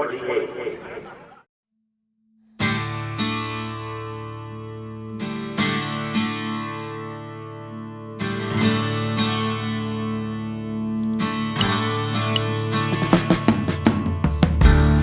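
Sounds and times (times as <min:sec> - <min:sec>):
acoustic guitar strumming: 0:02.6 - 0:14.3.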